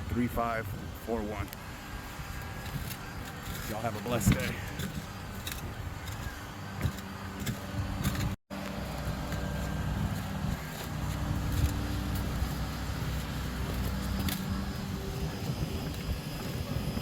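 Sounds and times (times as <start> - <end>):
vehicle engine humming: 0.0 - 17.0.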